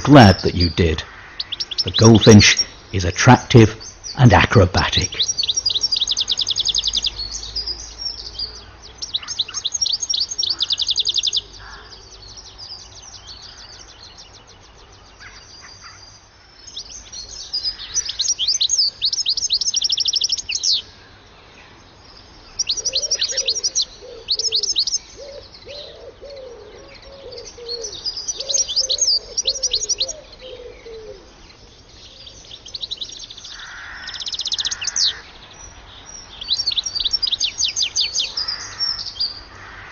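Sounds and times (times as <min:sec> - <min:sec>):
goldfinch twittering: 0:00.0 - 0:08.2, 0:32.5 - 0:39.4.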